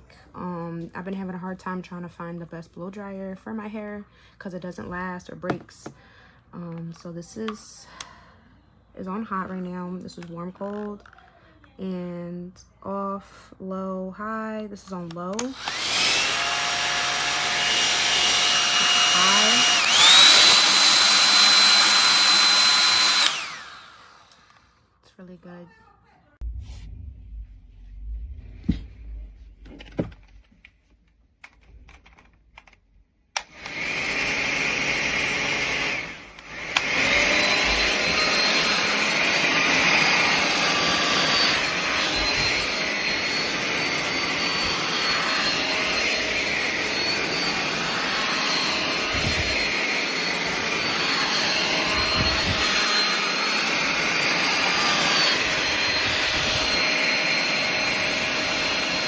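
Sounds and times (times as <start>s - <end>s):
hair dryer running: 15.4s - 24.7s, 33.4s - 59.0s.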